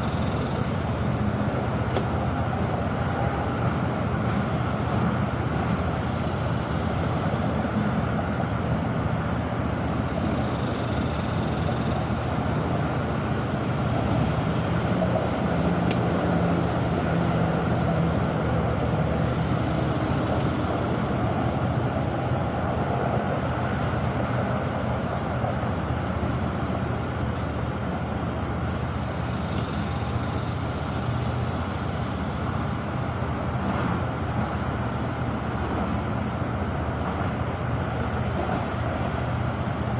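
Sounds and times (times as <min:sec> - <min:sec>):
road traffic rumble: 0:00.0 - 0:39.9.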